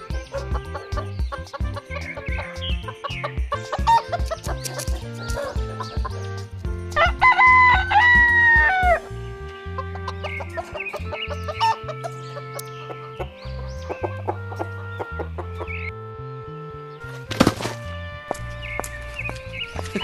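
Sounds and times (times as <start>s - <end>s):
background music: 0.0s - 20.0s
hens clucking: 0.2s - 6.3s, 7.0s - 15.9s
rooster crowing: 7.0s - 9.0s.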